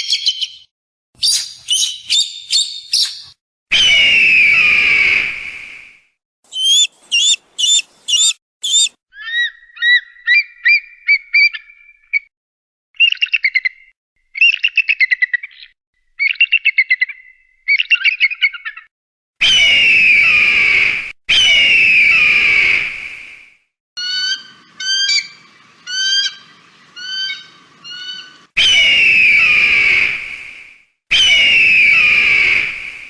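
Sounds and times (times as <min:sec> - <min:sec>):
eagle calls: 0:06.5 - 0:10.8.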